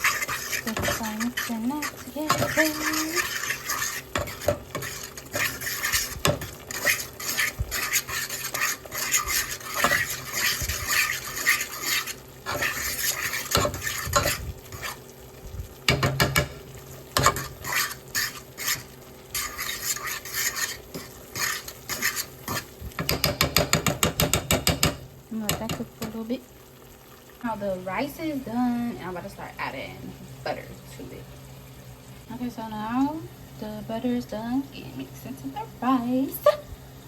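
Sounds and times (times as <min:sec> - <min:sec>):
utensil scraping a pot: 0:00.0 - 0:15.2, 0:17.2 - 0:24.8
light sizzle: 0:00.0 - 0:37.0.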